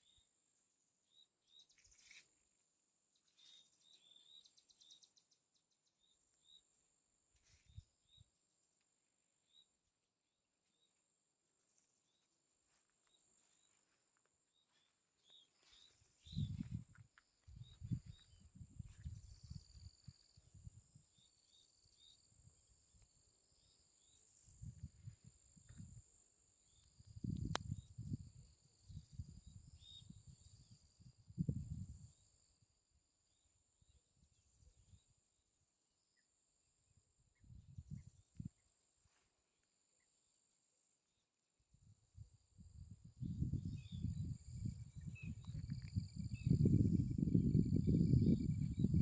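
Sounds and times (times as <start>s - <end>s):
low rumbles on microphone: 16.2s - 20.8s, 42.7s - 49.0s
insects trilling: 42.7s - 49.0s.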